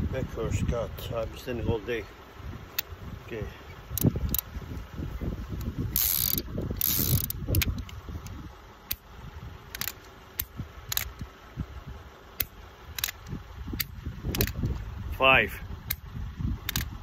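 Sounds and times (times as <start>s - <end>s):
revolver cylinder ratcheting whir: 3.7s - 15.1s, 15.7s - 17.0s.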